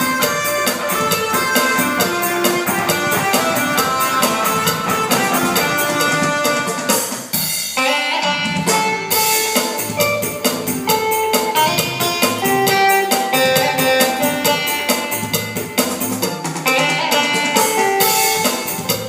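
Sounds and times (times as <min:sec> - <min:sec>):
held-note keyboard melody: 0:00.0 - 0:06.8
bass line: 0:00.0 - 0:07.0, 0:08.3 - 0:16.2
drum-kit beat: 0:00.0 - 0:19.0
plucked guitar-like parts: 0:00.0 - 0:19.0.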